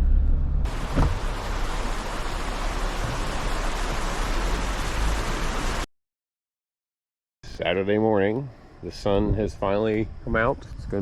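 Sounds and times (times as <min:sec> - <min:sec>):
low car rumble: 0:00.0 - 0:05.8
floodwater rushing: 0:00.7 - 0:05.9.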